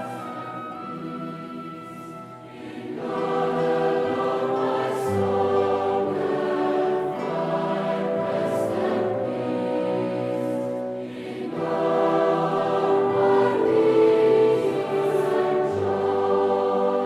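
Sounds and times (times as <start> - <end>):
choir singing a chant: 0.0 - 17.0.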